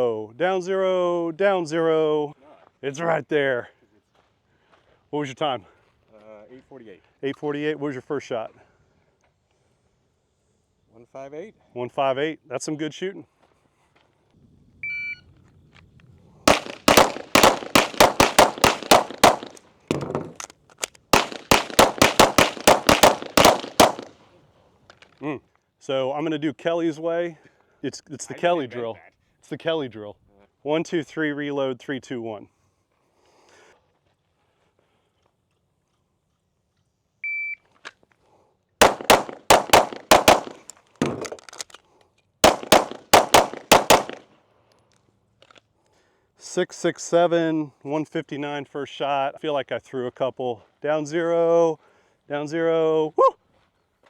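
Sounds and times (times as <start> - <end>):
pistol shots: 16.5 - 20.4, 21.2 - 24.2, 38.8 - 41.4, 42.4 - 44.2
rapid gunshots: 16.5 - 20.4, 21.2 - 24.2, 38.8 - 41.4, 42.4 - 44.2
gun reloading clatter: 16.5 - 24.2, 38.8 - 44.2.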